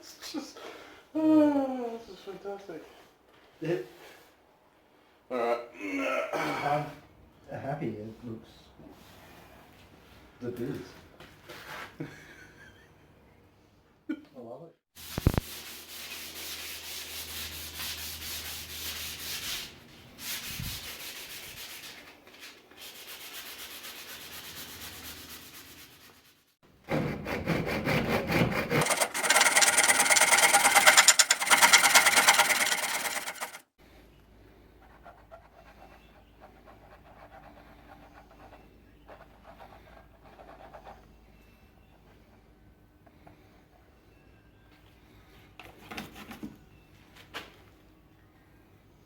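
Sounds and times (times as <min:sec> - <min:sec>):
abrasive grinding on steel: 0:28.7 - 0:33.6.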